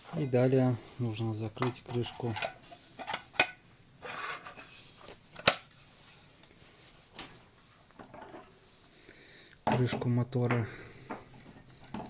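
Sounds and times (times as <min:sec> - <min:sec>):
cover scraping: 0:01.5 - 0:06.1.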